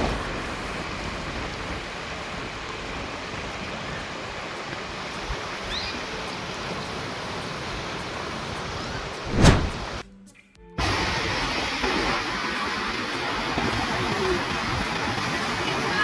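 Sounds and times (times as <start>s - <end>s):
fast-flowing water rushing: 0.0s - 10.0s, 10.8s - 16.0s
loud whoosh: 9.2s - 10.0s.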